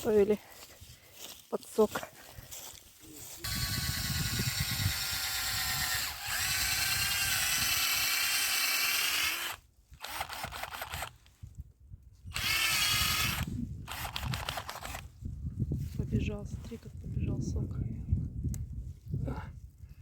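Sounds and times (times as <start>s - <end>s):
power drill whining: 3.4s - 11.2s, 12.3s - 15.0s.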